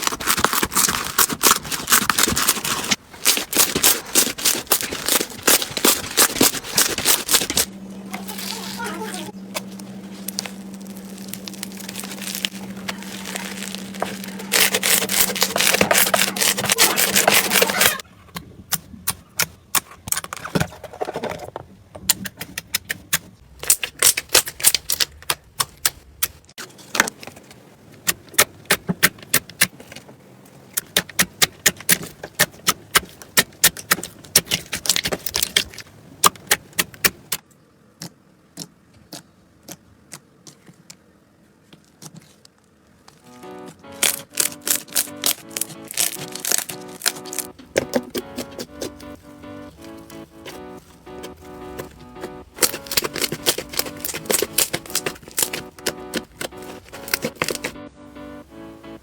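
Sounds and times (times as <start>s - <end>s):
slime crackling and popping: 0.0s - 8.9s, 9.5s - 18.0s, 23.6s - 26.0s, 30.8s - 37.4s, 43.3s - 57.8s
steady low hum: 1.6s - 19.7s, 42.8s - 59.0s.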